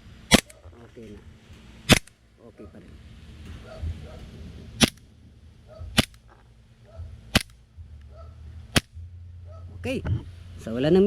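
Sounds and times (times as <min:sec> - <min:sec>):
airsoft pistol shots: 0:00.3 - 0:00.6, 0:01.9 - 0:02.2, 0:04.8 - 0:05.0, 0:05.9 - 0:06.2, 0:07.3 - 0:07.6, 0:08.7 - 0:09.0.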